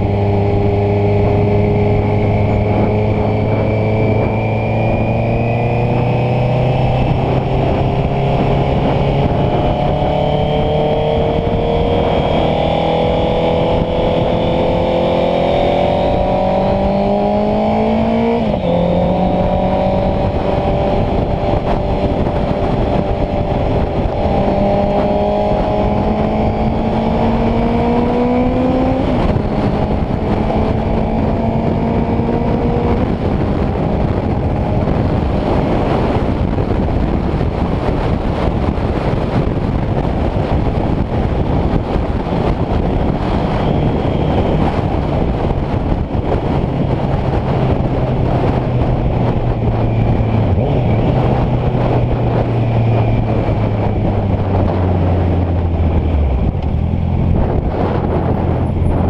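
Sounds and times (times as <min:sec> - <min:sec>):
motorcycle engine revving: 0:00.0 - 0:59.0
wind noise: 0:00.0 - 0:59.0.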